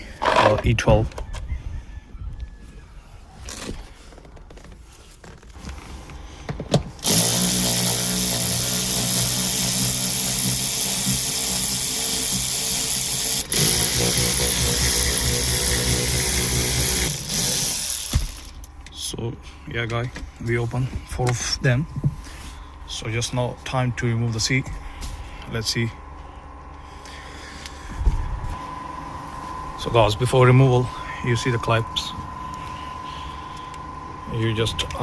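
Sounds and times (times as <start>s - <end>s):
power drill running: 7.0s - 18.7s.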